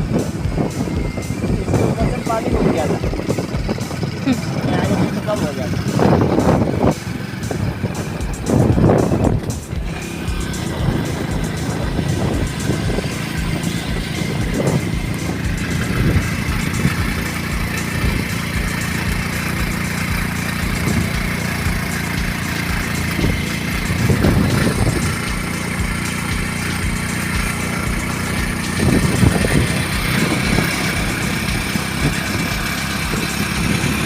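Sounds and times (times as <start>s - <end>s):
road noise: 0.0s - 34.0s
vehicle engine running: 0.0s - 34.0s.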